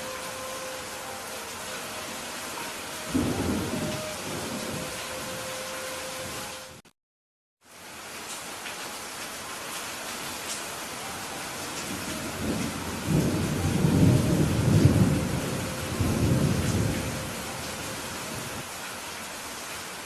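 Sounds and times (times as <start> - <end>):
steady rainfall: 0.0 - 6.9, 7.6 - 20.0
thunder rumbling: 3.0 - 5.5, 11.8 - 18.6.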